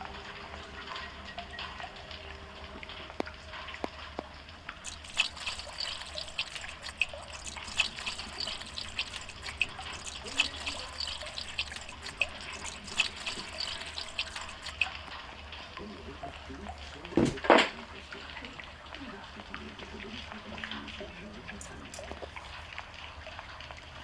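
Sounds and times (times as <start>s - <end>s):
water dripping and splashing: 0.0s - 24.0s.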